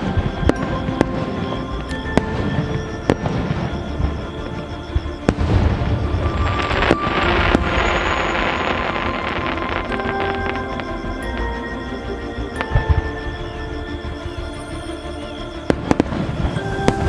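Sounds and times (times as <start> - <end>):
fireworks bangs and crackling: 0.0 - 11.6, 15.7 - 17.0
background music: 0.0 - 17.0.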